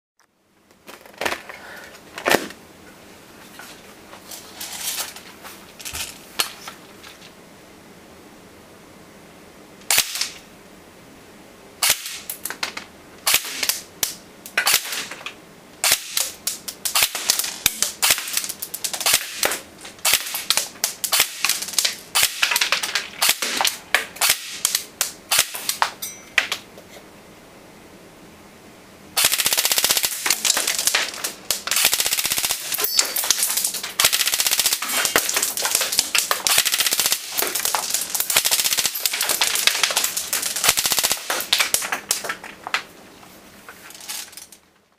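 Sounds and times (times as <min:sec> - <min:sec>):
airsoft rifle firing clacks: 0:13.3 - 0:13.8, 0:15.8 - 0:26.0, 0:29.2 - 0:42.5.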